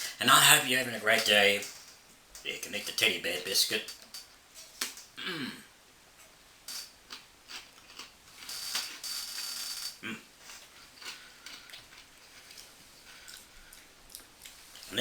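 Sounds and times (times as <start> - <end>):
biscuit being chewed: 7.1 - 9.0, 10.1 - 14.9.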